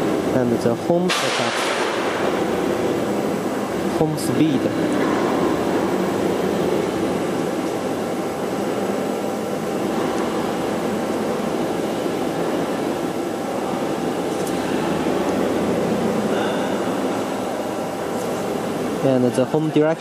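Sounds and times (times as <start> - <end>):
machine rumble: 0.0 - 20.0.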